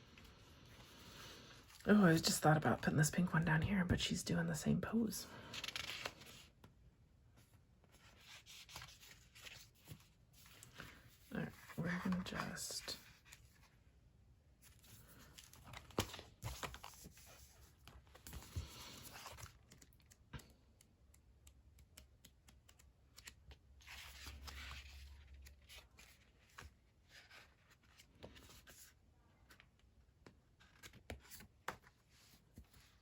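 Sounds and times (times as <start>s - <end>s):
paper rustling and scraping: 7.9s - 13.7s.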